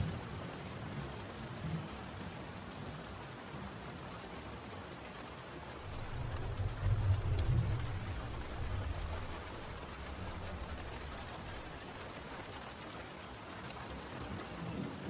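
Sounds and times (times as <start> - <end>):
steady rain falling: 0.0 - 15.0
low rumble: 5.8 - 12.1.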